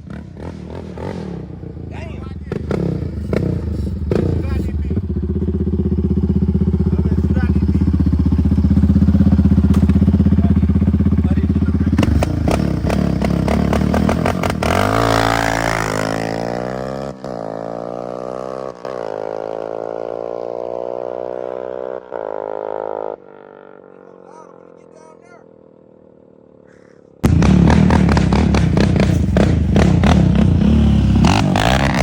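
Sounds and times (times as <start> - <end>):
atv engine with loud exhaust: 0.0 - 32.0
sharp exhaust cracks: 27.2 - 32.0.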